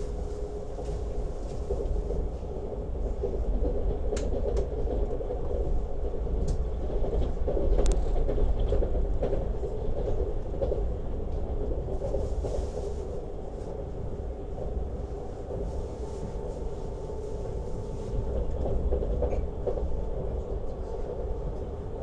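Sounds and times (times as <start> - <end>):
train wheels rumbling on rails: 0.0 - 22.0.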